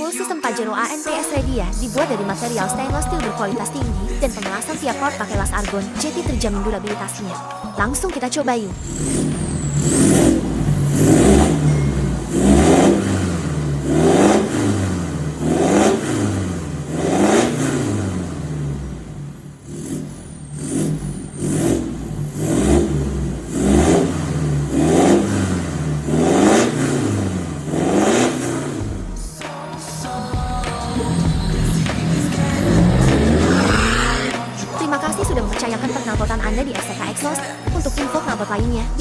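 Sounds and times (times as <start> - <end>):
car engine revving: 8.7 - 34.7.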